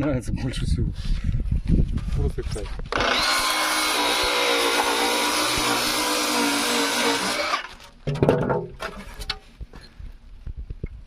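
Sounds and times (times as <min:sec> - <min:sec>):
power saw whining through foam: 0:02.9 - 0:07.9.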